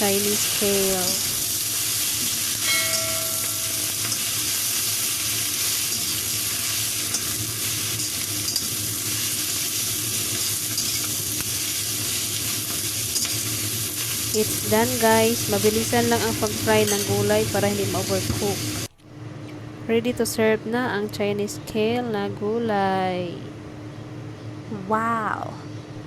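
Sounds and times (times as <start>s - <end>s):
greens sizzling in hot oil: 0.0s - 18.9s.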